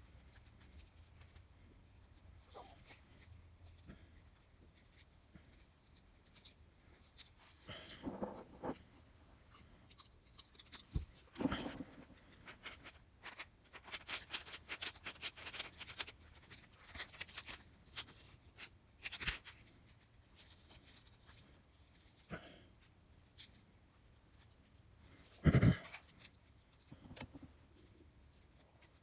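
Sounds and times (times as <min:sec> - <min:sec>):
rustling of wire: 0:00.0 - 0:29.0.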